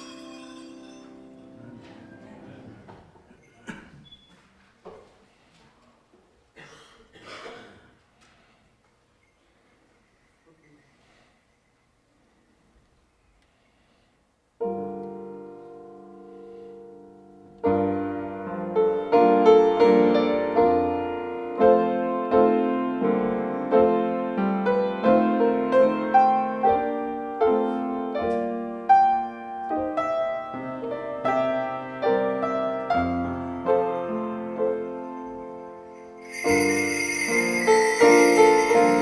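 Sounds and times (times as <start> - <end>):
piano playing chords: 0.0 - 2.8, 16.9 - 39.0.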